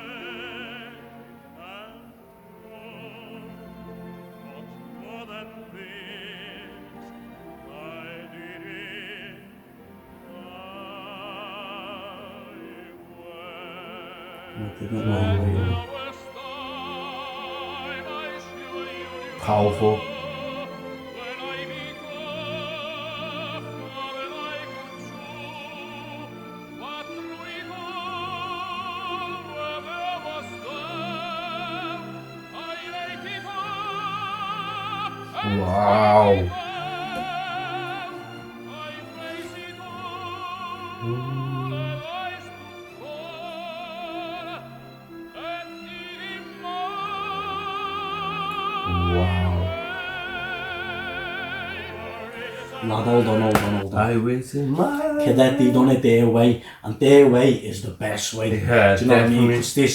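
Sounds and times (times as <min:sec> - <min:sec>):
orchestral accompaniment: 0:00.0 - 0:57.7
tenor singing with vibrato: 0:10.3 - 0:57.6.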